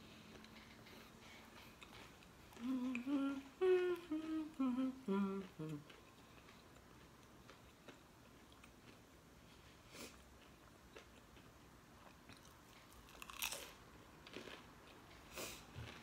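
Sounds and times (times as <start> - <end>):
woman humming: 2.5 - 6.0.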